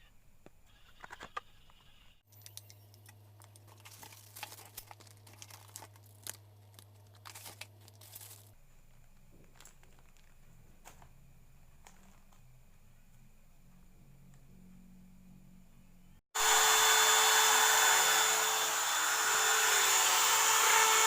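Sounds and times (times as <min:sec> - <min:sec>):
crinkling handling noises: 0:02.3 - 0:12.4.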